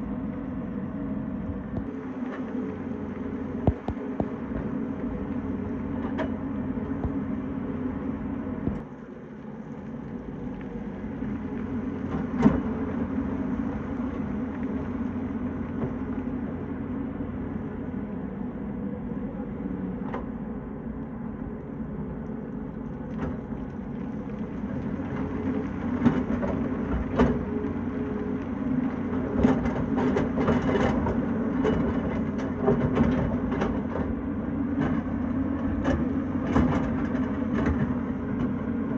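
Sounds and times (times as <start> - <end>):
excavator diesel engine running: 0.0 - 38.9.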